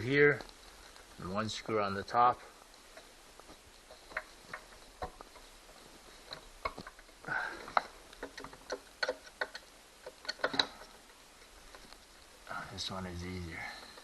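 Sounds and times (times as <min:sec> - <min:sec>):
hand tool clicking and tapping: 0:07.7 - 0:10.8.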